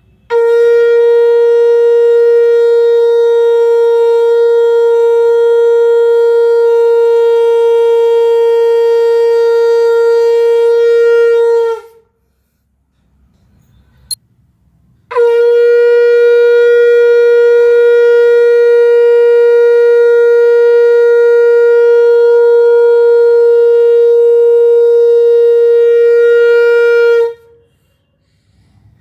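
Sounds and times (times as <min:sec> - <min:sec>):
conch shell blown: 0:00.0 - 0:12.4, 0:15.0 - 0:29.0.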